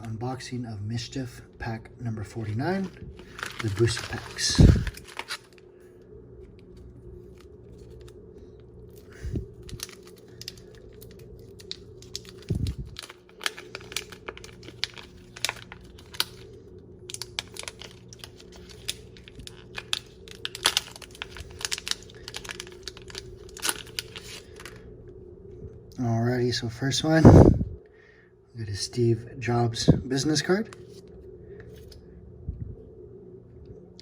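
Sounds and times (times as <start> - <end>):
faint steady hum: 0.0 - 34.0
wrapper crinkling and tearing: 2.6 - 5.7, 8.9 - 24.8.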